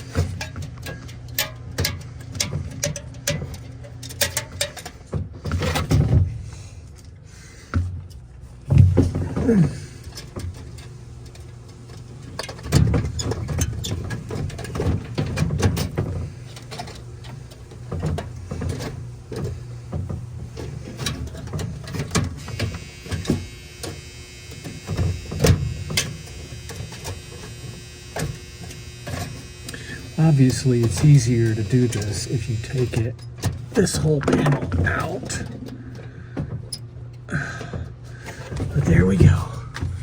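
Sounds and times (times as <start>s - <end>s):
wire knocking and scraping plastic: 0.0s - 6.5s, 7.7s - 29.5s, 37.6s - 40.0s
steady low hum: 0.0s - 40.0s.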